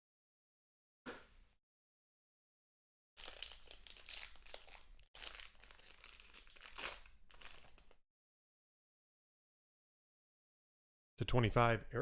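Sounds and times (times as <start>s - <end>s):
plastic wrapping crinkling and tearing: 3.2s - 8.0s.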